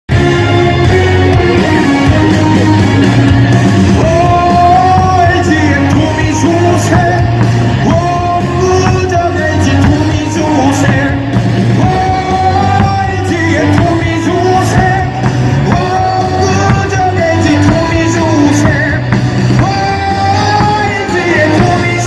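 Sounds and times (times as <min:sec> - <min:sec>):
crowd yelling: 0:00.1 - 0:22.0
person singing over a beat: 0:03.8 - 0:22.0.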